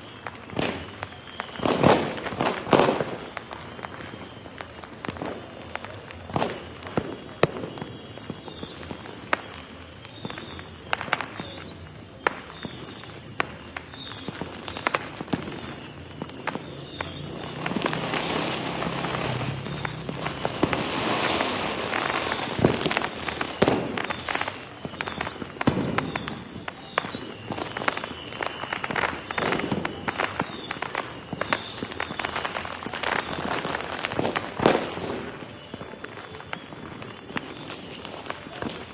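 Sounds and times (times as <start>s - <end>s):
fireworks bangs: 0.0s - 38.9s
fireworks crackling: 0.0s - 38.9s.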